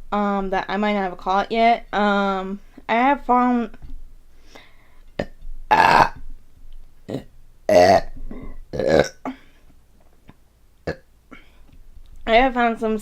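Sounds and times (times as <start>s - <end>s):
woman burping: 5.2s - 6.2s, 7.1s - 9.6s, 10.9s - 11.5s.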